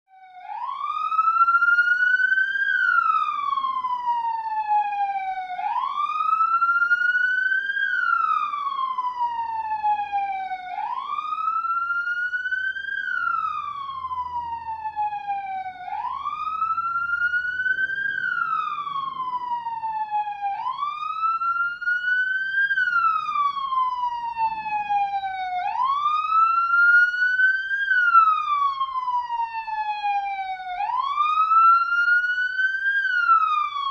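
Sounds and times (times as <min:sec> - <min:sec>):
ambulance siren wailing: 0:00.1 - 0:33.9.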